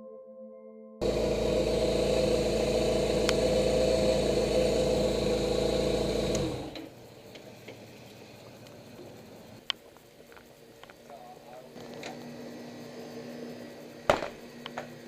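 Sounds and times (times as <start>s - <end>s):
motorcycle engine running: 1.0s - 9.6s
faint clicks: 6.3s - 11.2s.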